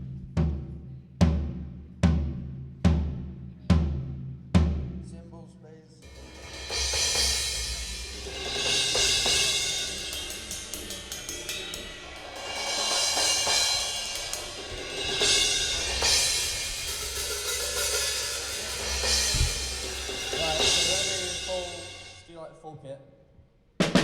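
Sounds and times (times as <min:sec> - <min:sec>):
cymbal crashes ringing: 0:06.0 - 0:22.3
quick sharp cymbal taps: 0:06.1 - 0:22.2.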